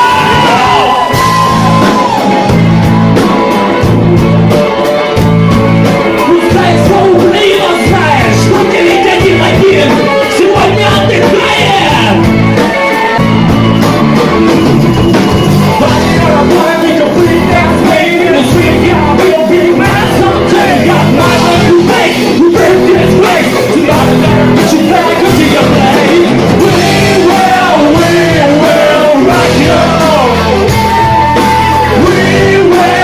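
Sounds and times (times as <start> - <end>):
rock band playing loud: 0.0 - 33.0
person singing: 6.1 - 13.2, 15.7 - 33.0.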